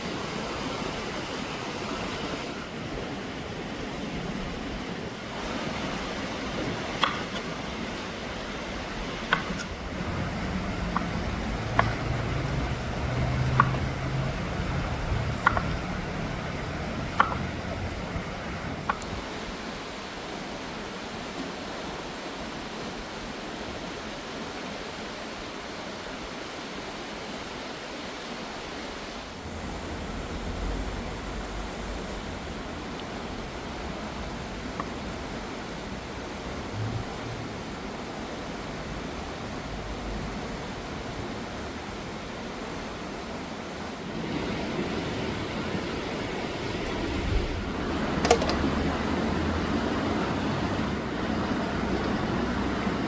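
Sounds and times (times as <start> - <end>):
river water rushing: 0.0 - 53.0
low rumble: 29.5 - 33.5.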